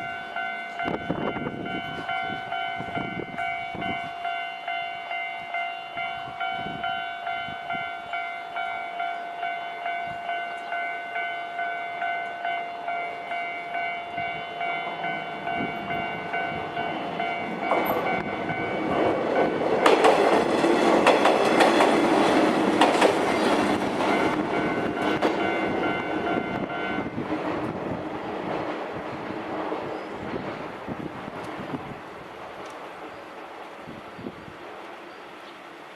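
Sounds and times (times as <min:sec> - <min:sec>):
level crossing warning bell ringing: 0:00.0 - 0:27.2
train rumble and wheel clicks: 0:00.0 - 0:35.9.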